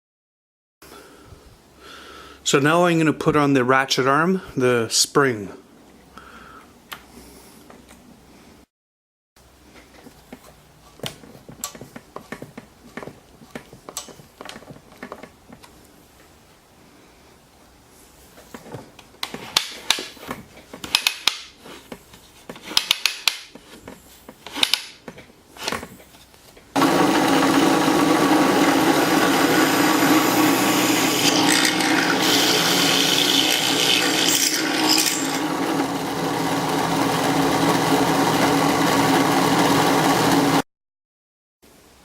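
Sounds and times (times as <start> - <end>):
power tool running on wood: 26.8 - 40.6.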